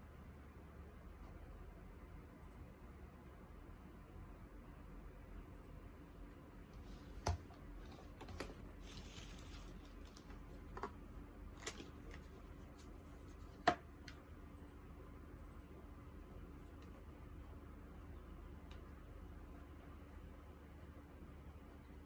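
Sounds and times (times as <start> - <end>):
soft rustle: 7.8 - 10.6.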